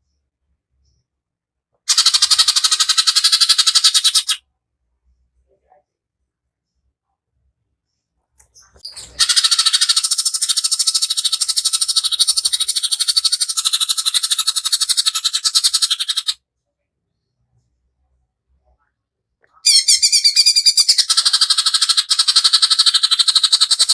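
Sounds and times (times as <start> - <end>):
bird rapid rattling song: 1.9 - 4.4, 8.5 - 16.4, 19.7 - 23.9.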